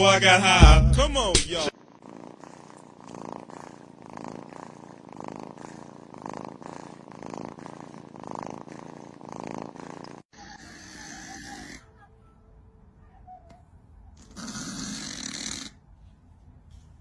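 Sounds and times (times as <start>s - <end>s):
cat purring: 0.4s - 11.9s.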